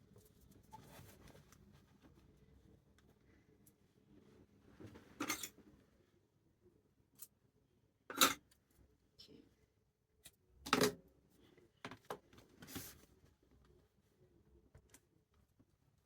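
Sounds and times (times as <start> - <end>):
rustling and scraping materials: 0.2 - 2.3.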